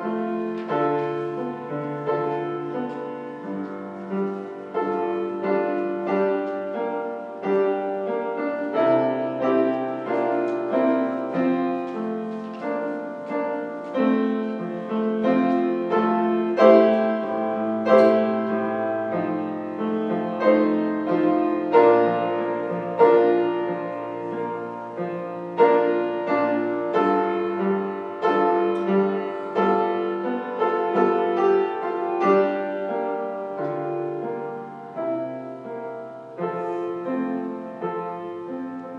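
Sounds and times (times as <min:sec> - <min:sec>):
piano playing slow chords: 0:00.0 - 0:38.9.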